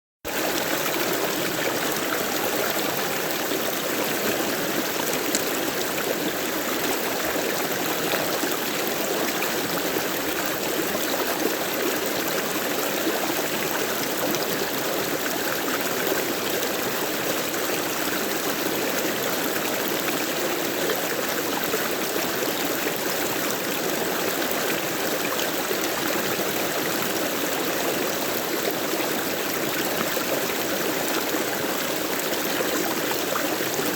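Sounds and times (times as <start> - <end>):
stream water flowing: 0.3 - 33.9.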